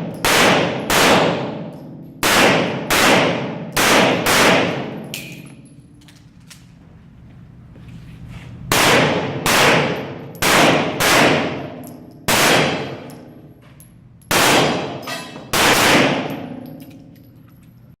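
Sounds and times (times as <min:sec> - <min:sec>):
pistol shots: 0:00.0 - 0:05.4, 0:08.7 - 0:13.1, 0:14.3 - 0:16.6.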